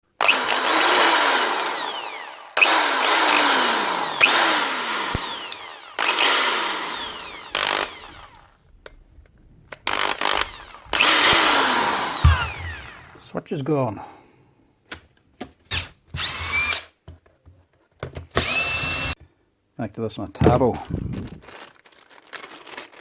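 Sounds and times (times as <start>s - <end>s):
drill motor spinning up and down: 0.1s - 8.6s, 9.8s - 13.2s, 15.7s - 16.9s, 18.4s - 19.2s.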